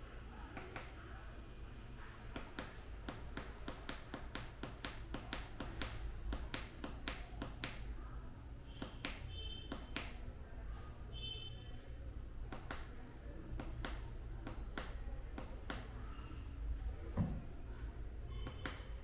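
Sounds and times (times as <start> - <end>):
rapid sharp clicks: 12.5 - 16.0.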